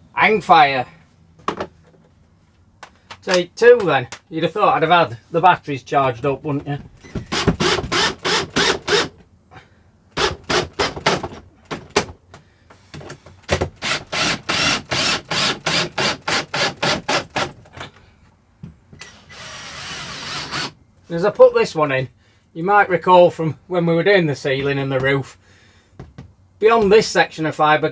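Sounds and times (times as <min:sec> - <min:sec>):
cordless drill driving screws: 0:07.2 - 0:09.2, 0:10.2 - 0:11.3, 0:13.8 - 0:17.6, 0:19.0 - 0:20.8.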